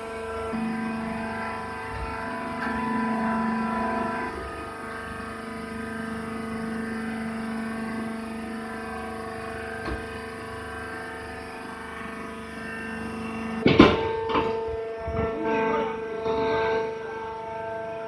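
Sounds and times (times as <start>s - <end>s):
baler motor humming: 0.0s - 18.0s
loud metallic clank: 13.6s - 16.7s.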